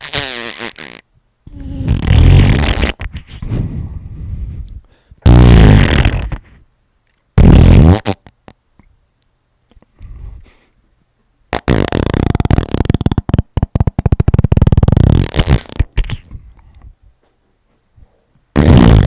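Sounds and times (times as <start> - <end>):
fart sound effects: 0.0 - 3.4, 5.2 - 6.6, 7.4 - 8.6, 11.5 - 16.3, 18.5 - 19.0.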